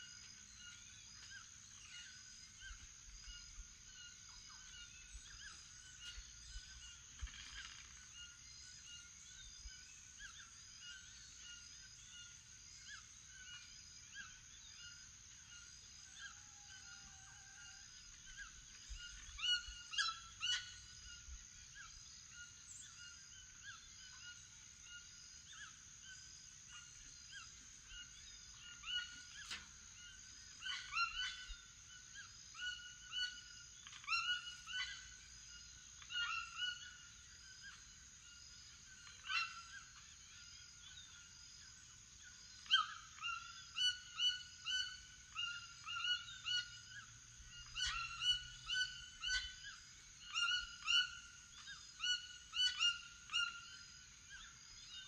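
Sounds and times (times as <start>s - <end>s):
toucans calling: 27.9s - 32.0s, 42.6s - 55.0s.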